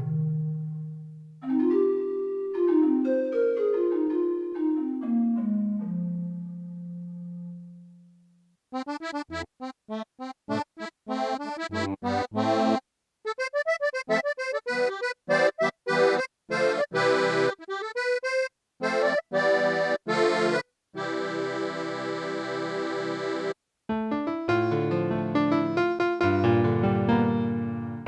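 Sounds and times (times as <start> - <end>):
reedy organ staccato notes and chords: 11.7 - 12.6.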